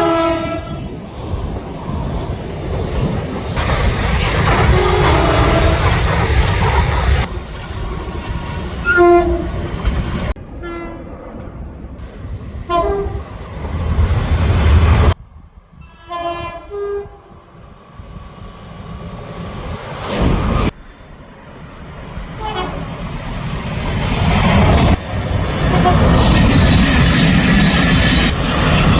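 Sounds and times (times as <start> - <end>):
train horn blasts: 0.0 - 0.9, 4.6 - 6.0, 8.8 - 9.6, 10.5 - 11.1, 12.6 - 13.3, 15.8 - 17.5, 22.4 - 22.9, 25.7 - 26.1
trains rumbling on rails: 0.0 - 28.9.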